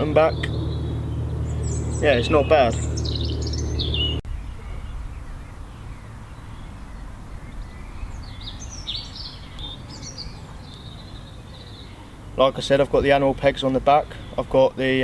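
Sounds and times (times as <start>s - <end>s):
steady low hum: 0.0s - 8.8s
faint outdoor background: 0.0s - 15.0s
small birds chirping: 0.0s - 15.0s.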